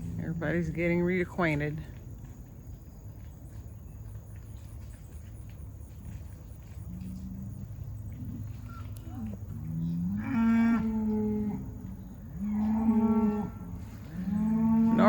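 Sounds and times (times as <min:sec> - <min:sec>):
bulls mooing: 0:09.2 - 0:15.0.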